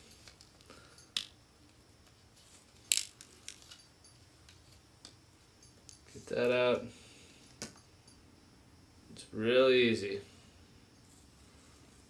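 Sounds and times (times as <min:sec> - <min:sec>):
small clicks and clinks: 0:00.0 - 0:01.4, 0:02.9 - 0:06.3, 0:07.5 - 0:08.2.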